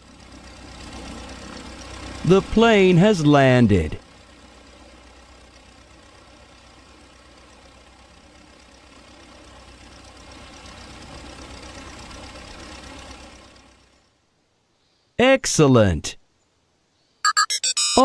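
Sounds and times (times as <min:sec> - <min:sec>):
propeller plane engine running: 0:00.0 - 0:14.1.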